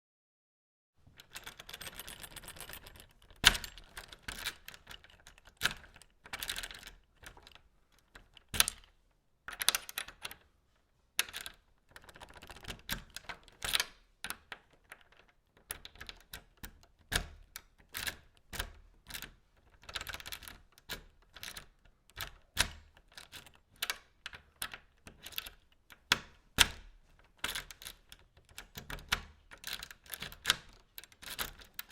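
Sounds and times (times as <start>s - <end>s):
key scraping into lock: 1.2s - 8.9s, 27.4s - 31.9s
lock clicking: 1.2s - 8.9s.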